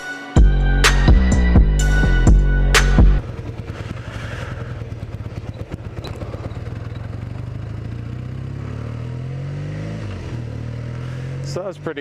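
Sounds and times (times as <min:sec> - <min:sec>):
motorcycle engine accelerating: 0:00.5 - 0:12.0.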